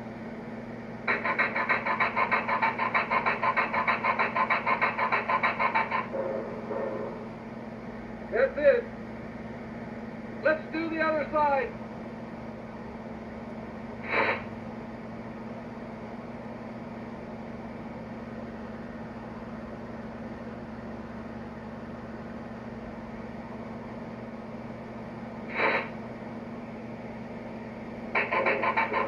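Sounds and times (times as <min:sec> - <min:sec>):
steam locomotive idle hum and hiss: 0:01.1 - 0:08.3, 0:16.0 - 0:29.0.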